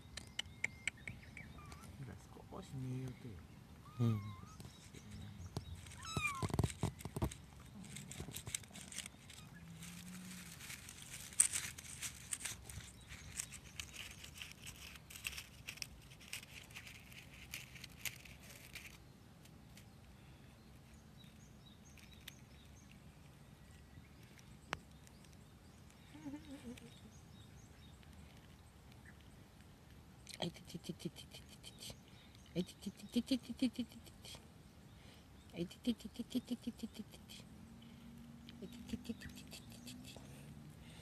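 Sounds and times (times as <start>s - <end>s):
kitten meowing: 1.5s - 2.0s, 3.8s - 4.6s, 5.9s - 6.6s
kittens scuffling rustling: 4.2s - 19.0s.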